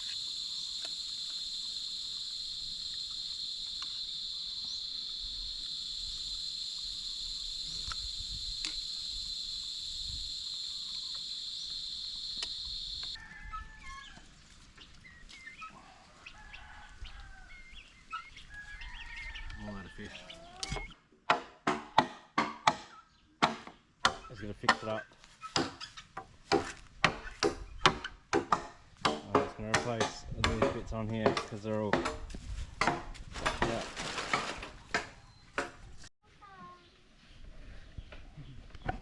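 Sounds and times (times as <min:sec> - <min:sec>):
high-pitched insect chorus: 0:00.0 - 0:13.2.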